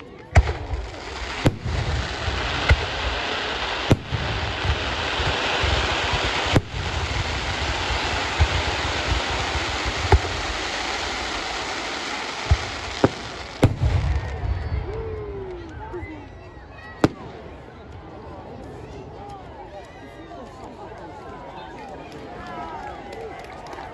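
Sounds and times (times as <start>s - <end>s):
fireworks rushing noise: 0.0s - 18.4s
sharp firework bangs: 0.4s - 14.8s.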